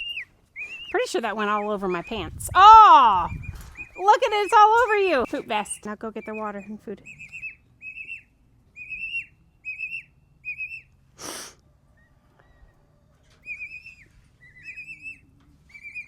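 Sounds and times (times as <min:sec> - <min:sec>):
chicks peeping: 0:13.4 - 0:16.0.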